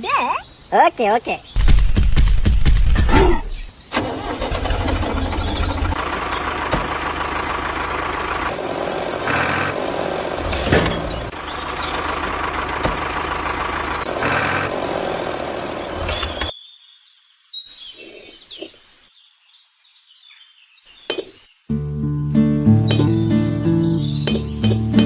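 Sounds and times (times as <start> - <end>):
vehicle engine rumbling: 1.6 - 16.5, 21.8 - 25.0.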